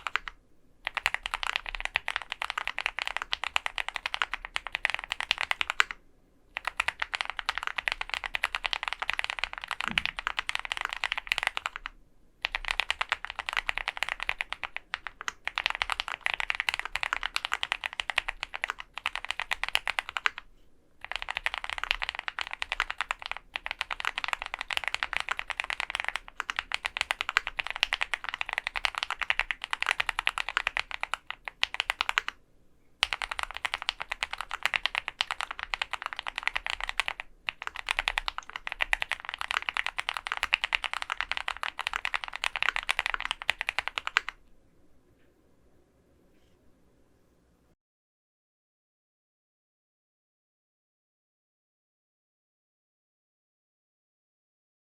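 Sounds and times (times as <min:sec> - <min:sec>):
mechanical keyboard typing: 0:00.0 - 0:06.0, 0:06.6 - 0:32.4, 0:33.0 - 0:44.4.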